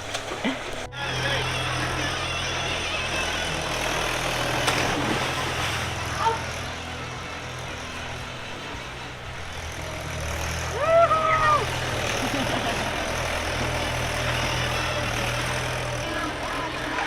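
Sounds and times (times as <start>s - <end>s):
engine humming: 0.0s - 17.0s.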